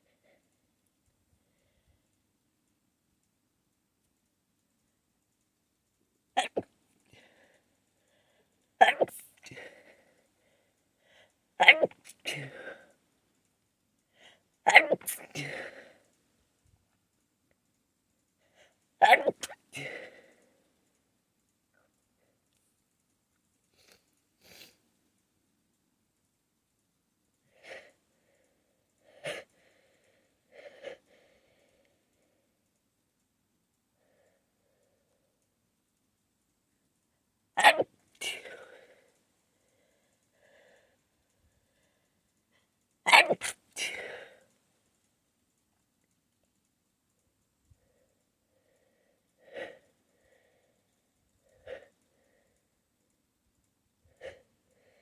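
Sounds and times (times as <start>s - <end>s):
faint breathing: 7.0s - 8.7s, 9.4s - 11.4s, 27.4s - 32.6s, 33.9s - 35.4s, 38.3s - 42.8s, 47.6s - 53.2s, 54.0s - 55.0s
person gasping holding back sneeze: 8.8s - 9.8s, 11.6s - 12.9s, 14.7s - 15.9s, 19.0s - 20.3s, 37.6s - 38.8s, 43.1s - 44.4s
person sniffing sharply: 23.8s - 24.8s.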